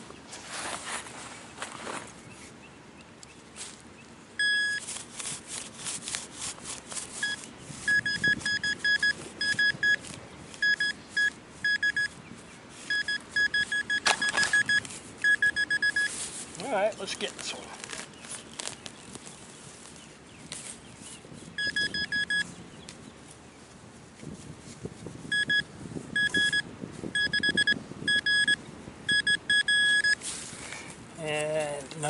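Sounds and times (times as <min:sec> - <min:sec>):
scraping and rustling: 0:00.2 - 0:02.6, 0:04.6 - 0:11.3, 0:12.0 - 0:21.6
metal detector beeping: 0:04.4 - 0:04.9, 0:07.1 - 0:12.2, 0:12.8 - 0:16.2, 0:21.6 - 0:22.5, 0:25.3 - 0:30.2.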